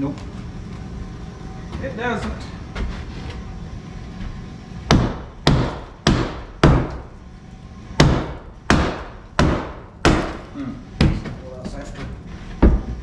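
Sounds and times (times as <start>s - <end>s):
hammer striking wood: 4.9s - 7.1s, 8.0s - 11.4s.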